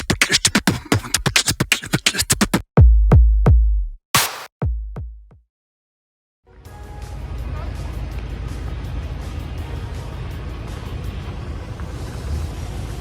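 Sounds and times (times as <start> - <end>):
drum machine roll: 0.0 - 5.4
booming bass kicks: 2.8 - 5.3.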